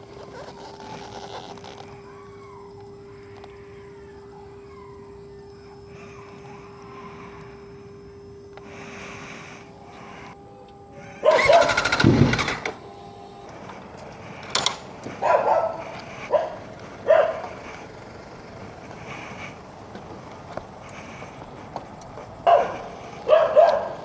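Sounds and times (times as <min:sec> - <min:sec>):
dog barking: 0:11.1 - 0:12.7, 0:15.1 - 0:17.8, 0:22.4 - 0:24.0
motorcycle starter cranking: 0:11.2 - 0:19.7.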